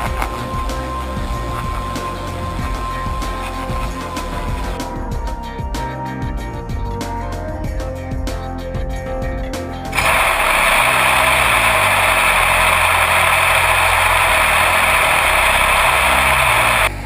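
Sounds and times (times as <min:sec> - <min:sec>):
washer loud steady hissing: 0:00.0 - 0:04.8, 0:10.0 - 0:17.0
background music: 0:00.0 - 0:17.0.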